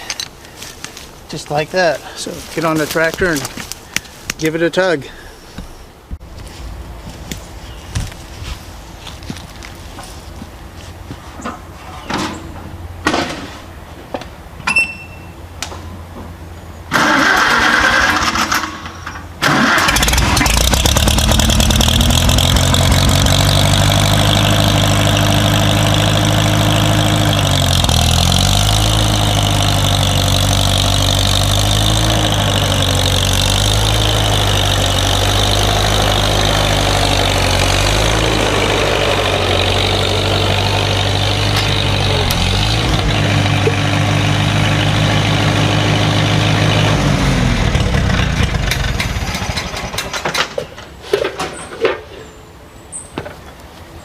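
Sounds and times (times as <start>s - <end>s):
tractor engine cranking and running: 16.9s - 52.0s.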